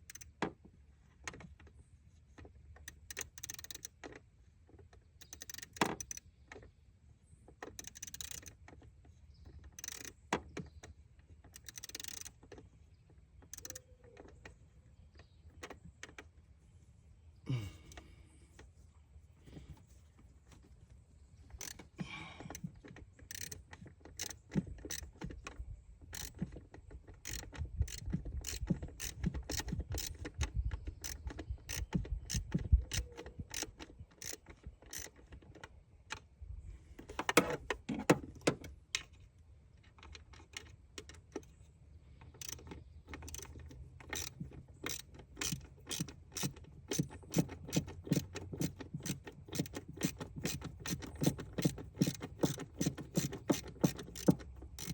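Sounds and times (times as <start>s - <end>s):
hand ratchet clicking: 2.9s - 4.2s, 5.2s - 6.2s, 7.6s - 8.6s, 9.7s - 10.2s, 11.6s - 12.4s, 13.5s - 13.9s, 21.5s - 22.6s, 23.2s - 35.2s, 42.3s - 54.9s
metal tool taps and rattles: 37.0s - 39.2s, 42.4s - 54.9s.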